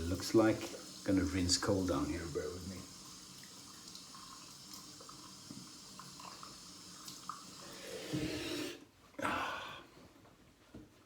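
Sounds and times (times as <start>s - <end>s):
tap water running into sink: 0.0s - 8.2s.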